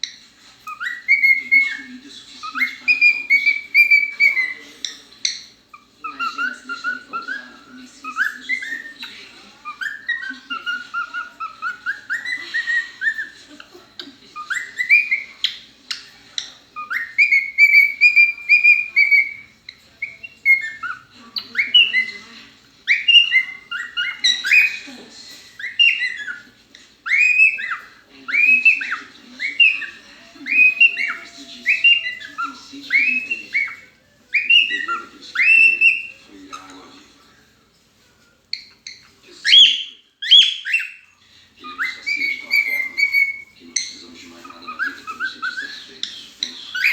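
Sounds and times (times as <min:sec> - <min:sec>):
animal whistling cries: 0:27.1 - 0:36.2, 0:39.5 - 0:41.0.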